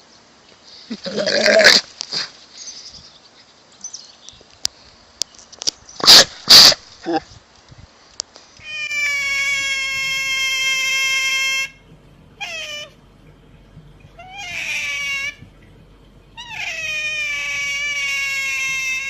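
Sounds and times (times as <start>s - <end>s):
cat meowing: 12.4s - 13.0s, 14.2s - 15.4s, 16.4s - 19.0s.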